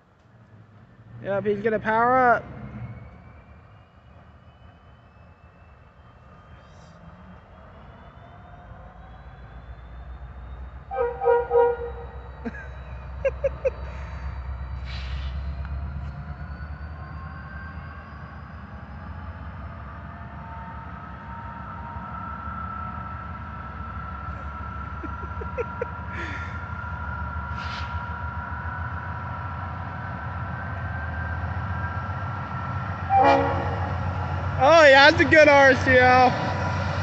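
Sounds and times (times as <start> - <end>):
diesel locomotive engine rumble: 0.0 - 37.0
short air hisses: 14.8 - 15.4, 27.5 - 28.0.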